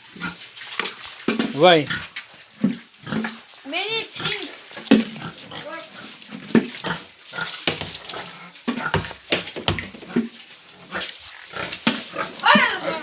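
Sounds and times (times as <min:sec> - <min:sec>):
pigs grunting: 0:01.4 - 0:13.0
knocks and scuffs: 0:07.6 - 0:10.4.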